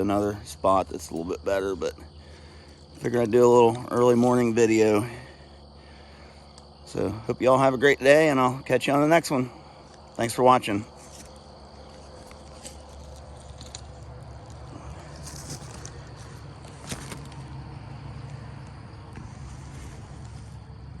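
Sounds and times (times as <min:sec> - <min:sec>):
scattered clicks or crunches: 0:12.2 - 0:16.0, 0:16.6 - 0:17.5.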